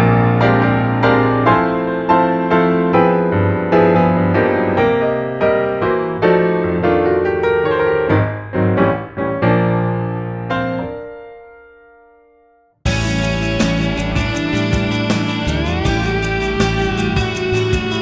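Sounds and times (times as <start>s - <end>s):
solo piano music: 0.0s - 18.0s.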